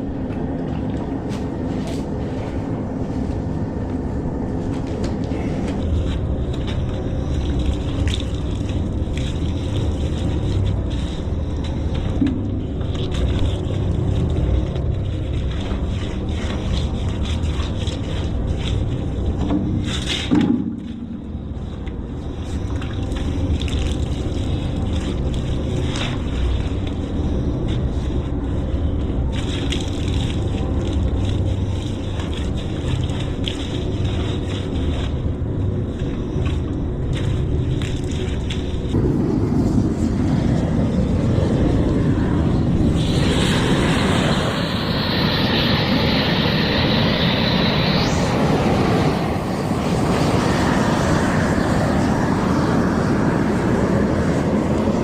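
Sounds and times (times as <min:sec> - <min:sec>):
loud machine drone: 0:00.0 - 0:55.0
low motor rumble: 0:00.0 - 0:55.0
wind buffeting microphone: 0:34.0 - 0:55.0.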